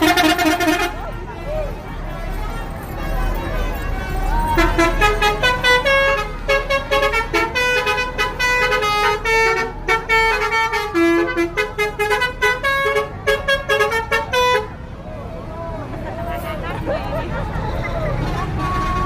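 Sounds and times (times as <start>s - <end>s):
musical bus horn playing tune: 0.0s - 1.2s, 3.0s - 14.8s.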